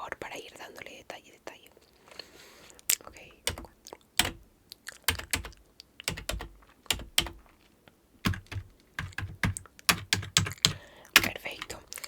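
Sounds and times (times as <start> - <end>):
keyboard typing: 3.4 - 7.5, 8.2 - 12.0.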